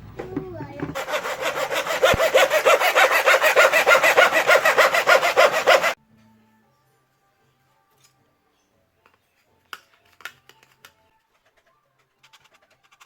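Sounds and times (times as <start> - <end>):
hand saw cutting wood: 1.0 - 6.0.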